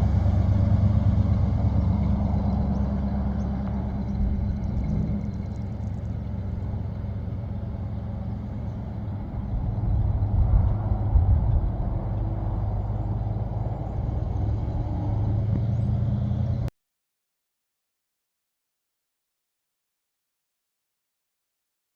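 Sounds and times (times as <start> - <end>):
truck engine running: 0.0 - 16.7.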